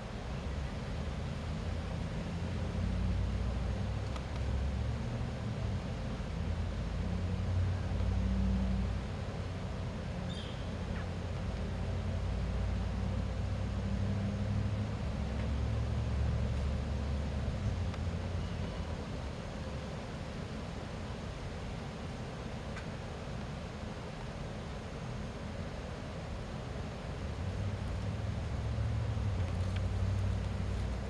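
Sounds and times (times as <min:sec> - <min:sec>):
engine-like low rumble: 0:00.0 - 0:31.0
faint high chirp: 0:10.3 - 0:10.7.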